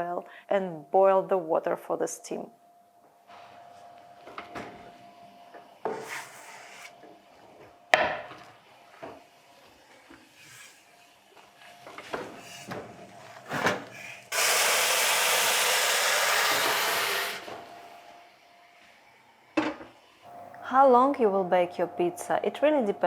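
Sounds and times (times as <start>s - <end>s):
steam hissing: 13.9s - 17.9s.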